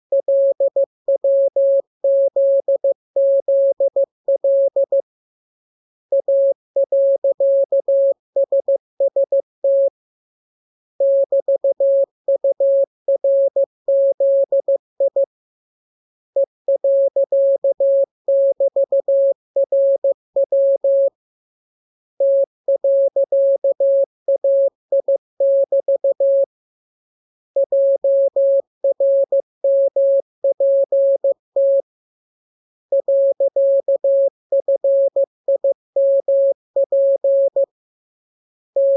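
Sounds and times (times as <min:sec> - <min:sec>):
morse code tone: 0:00.1 - 0:05.0, 0:32.9 - 0:37.7.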